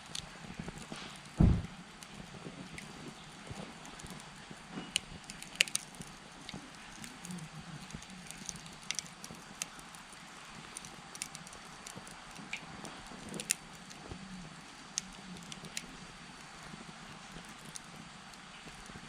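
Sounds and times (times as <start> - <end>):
campfire crackling pops: 0.0 - 19.0
flame rustling: 0.0 - 19.0.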